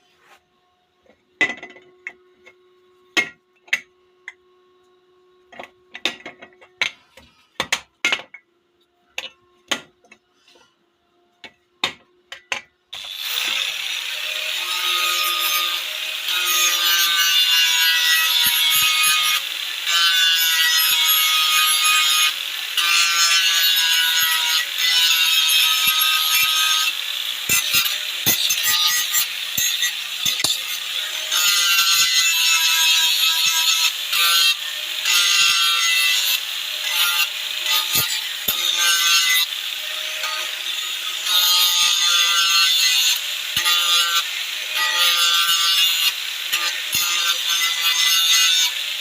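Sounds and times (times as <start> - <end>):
power tool grinding metal: 12.3 - 49.0.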